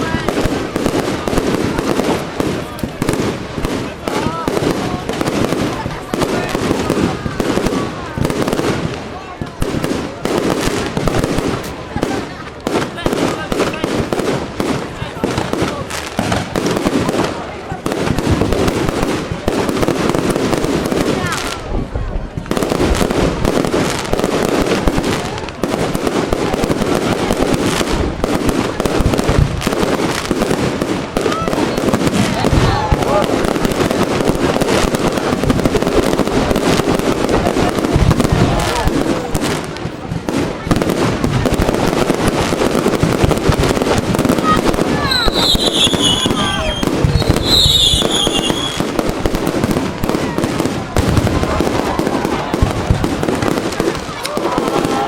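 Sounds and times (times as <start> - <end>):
fireworks crackling bangs: 0.0 - 55.0
fireworks high whistle: 44.3 - 49.0.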